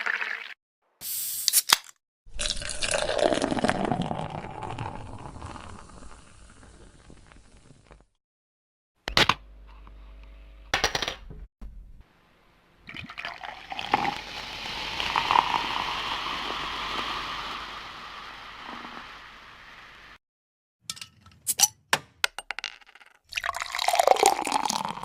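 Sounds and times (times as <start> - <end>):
hiss of liquid pouring: 13.2 - 20.2.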